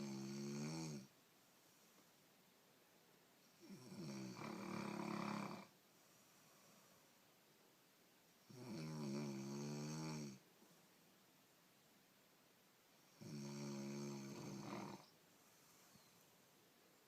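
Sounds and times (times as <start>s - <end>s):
woman snoring: 0.0s - 1.1s, 3.5s - 5.7s, 8.5s - 10.4s, 13.1s - 15.1s.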